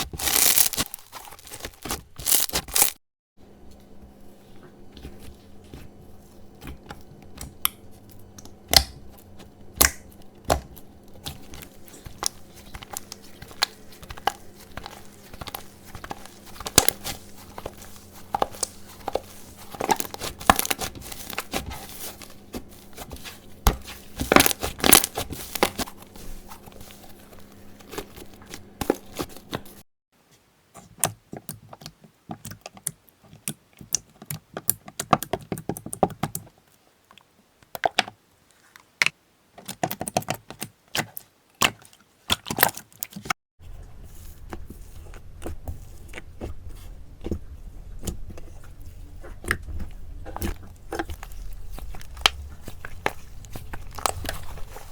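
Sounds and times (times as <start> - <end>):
slime crackling and clicking: 9.8 - 21.6.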